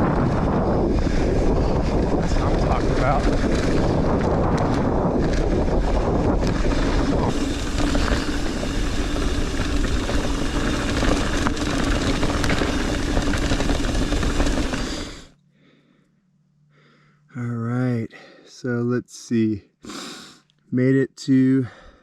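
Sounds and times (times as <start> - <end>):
wind buffeting microphone: 0.0 - 15.3
tyre and trail noise: 0.0 - 15.4.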